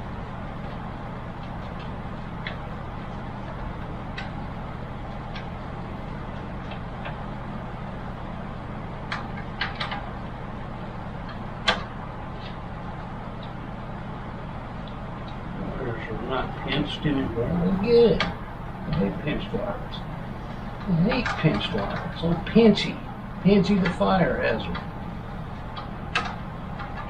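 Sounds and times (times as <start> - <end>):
steady low hum: 0.0 - 27.0
clicks and taps of parts: 9.1 - 10.0, 11.3 - 12.6, 25.8 - 27.0.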